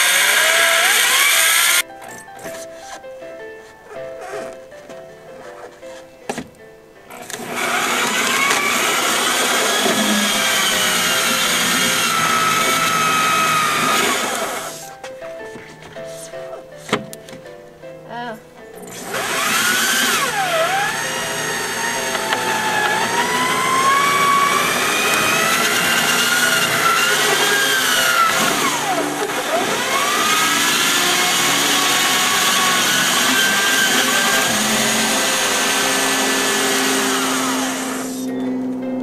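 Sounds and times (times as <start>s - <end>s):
small electric motor whining: 0.0s - 1.8s, 7.1s - 15.0s, 18.8s - 38.3s.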